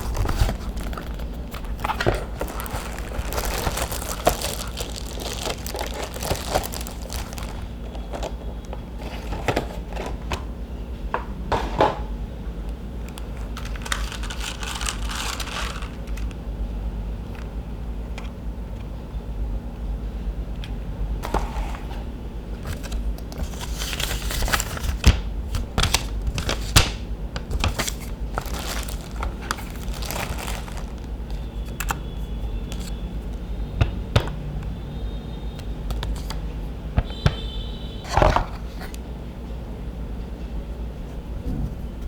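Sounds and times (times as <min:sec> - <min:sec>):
packaging crinkling and tearing: 0:00.0 - 0:09.9, 0:13.4 - 0:16.4, 0:22.6 - 0:33.0.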